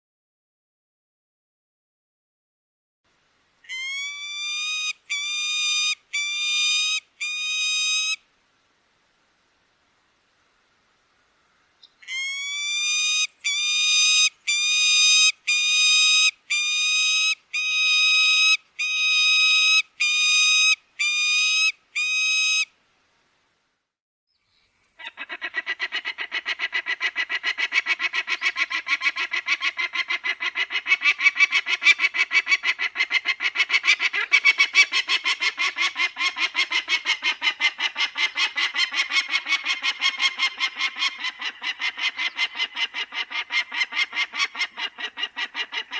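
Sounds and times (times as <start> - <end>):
falcon chattering: 25.0 - 45.9.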